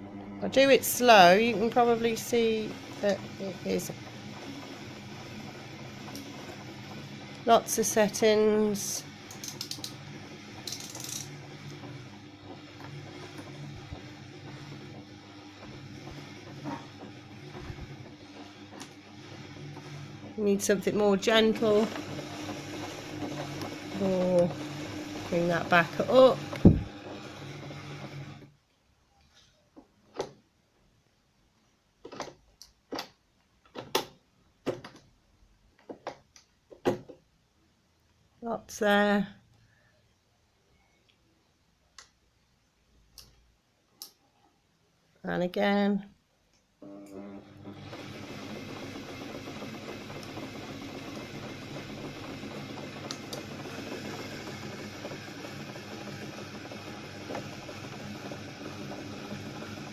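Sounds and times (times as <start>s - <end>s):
sewing machine stitching: 0.5s - 28.6s, 46.8s - 59.9s.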